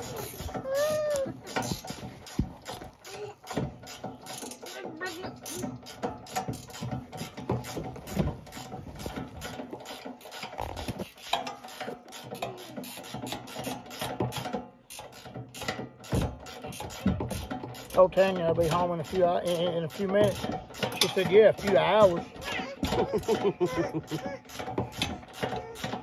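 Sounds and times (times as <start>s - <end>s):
ratchet wrench clicking: 0.0s - 26.0s.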